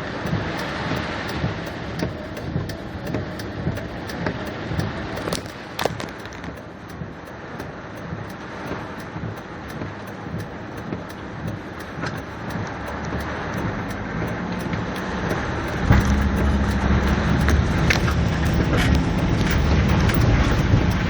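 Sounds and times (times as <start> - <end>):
car running: 0.0 - 21.0
heavy rain on car: 0.0 - 21.0
deep low rumble: 12.6 - 21.0.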